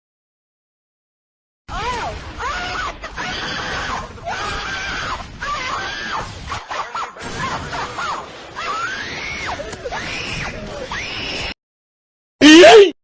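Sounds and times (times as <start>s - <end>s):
high-pitched voice wailing: 12.4s - 13.0s.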